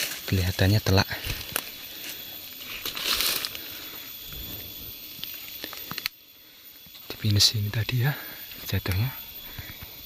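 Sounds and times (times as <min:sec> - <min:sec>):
footsteps through dry leaves: 0:00.0 - 0:04.0
twigs crackling: 0:00.0 - 0:06.2.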